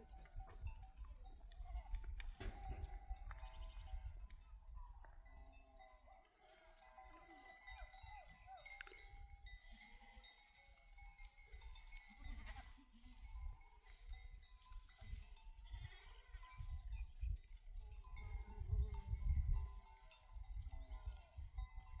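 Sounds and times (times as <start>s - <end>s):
sheep and goats bleating: 0.0s - 17.0s
animal bells ringing: 0.0s - 22.0s.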